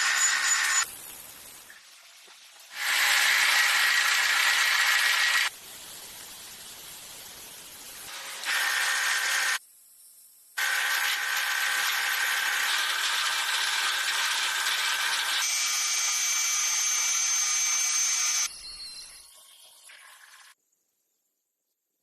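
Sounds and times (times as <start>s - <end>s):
drill machining with high whine: 0.0s - 0.9s, 2.7s - 5.5s, 8.2s - 9.6s, 10.6s - 19.0s.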